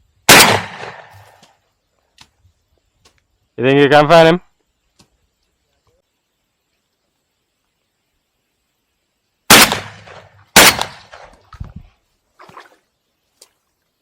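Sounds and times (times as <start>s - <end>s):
shotgun shots echoing: 0.3s - 1.3s, 9.5s - 11.3s.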